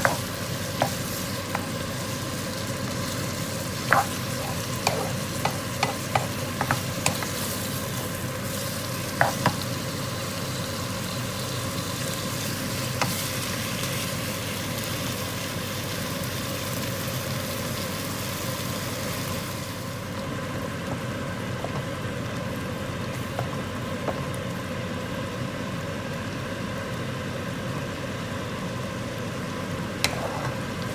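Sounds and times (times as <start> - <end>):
utensil tapping and scraping pan: 0.0 - 1.9, 3.8 - 7.5, 9.2 - 9.6, 30.0 - 30.9
chili paste sizzling in a pan: 0.0 - 30.9.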